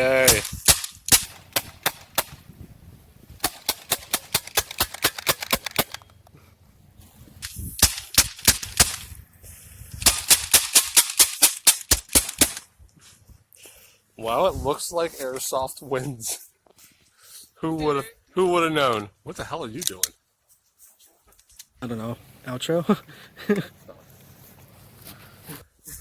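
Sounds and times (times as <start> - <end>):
airsoft gun snapping shots: 0.2 - 2.4, 3.4 - 6.1, 7.4 - 9.2, 10.0 - 12.7.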